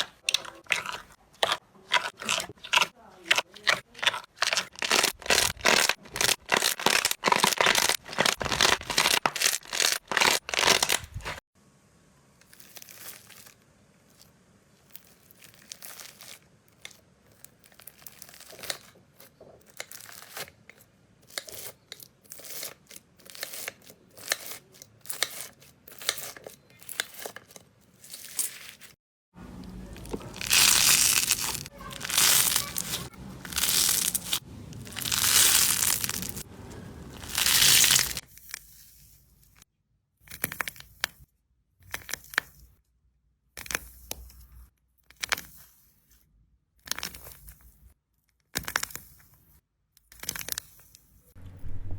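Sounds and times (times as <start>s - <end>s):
slime crackling and popping: 4.0s - 11.4s, 14.9s - 18.8s, 29.6s - 38.2s.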